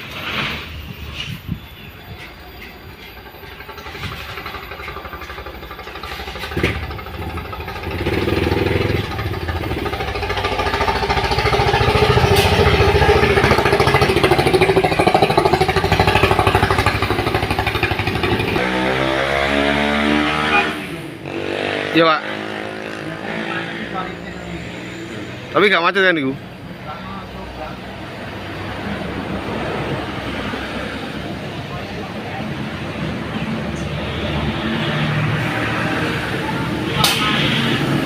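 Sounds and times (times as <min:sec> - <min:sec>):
vehicle engine running: 0:02.7 - 0:21.4.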